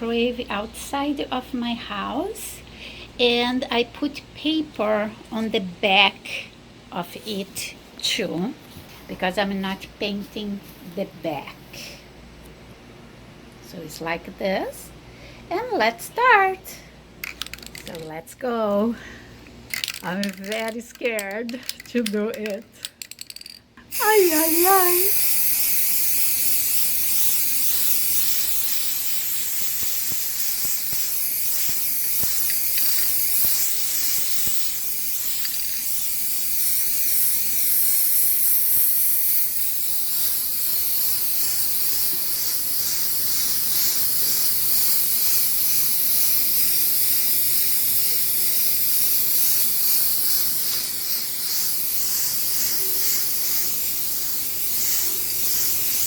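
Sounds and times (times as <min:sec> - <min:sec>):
aerosol spray can hissing: 0:19.7 - 0:56.0.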